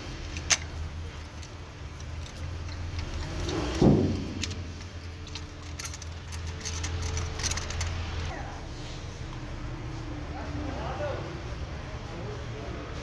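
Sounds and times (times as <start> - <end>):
metallic clicking and jingling: 0.0 - 8.3
car engine humming: 0.0 - 12.3
sharp thump: 3.7 - 5.0.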